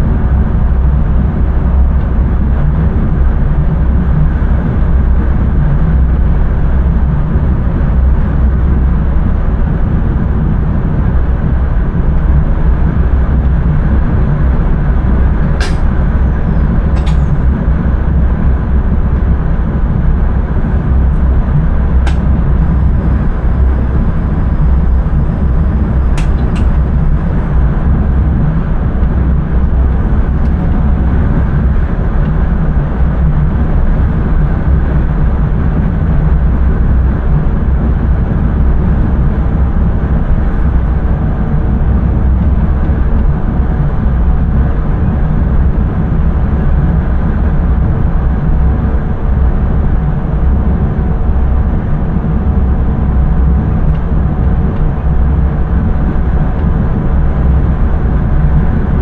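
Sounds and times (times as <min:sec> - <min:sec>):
train running rumble: 0:00.0 - 0:59.0.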